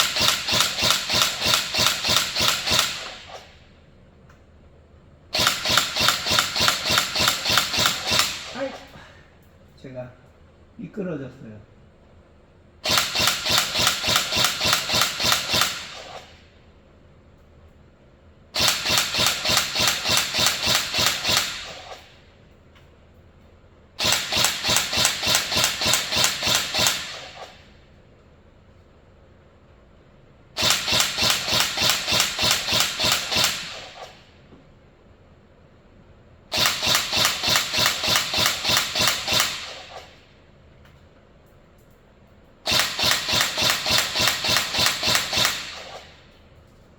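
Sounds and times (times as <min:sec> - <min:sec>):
airsoft gun firing full-auto: 0:00.0 - 0:03.5, 0:05.3 - 0:08.8, 0:12.8 - 0:16.4, 0:18.6 - 0:22.1, 0:24.0 - 0:27.7, 0:30.6 - 0:34.3, 0:36.5 - 0:40.2, 0:42.6 - 0:46.3.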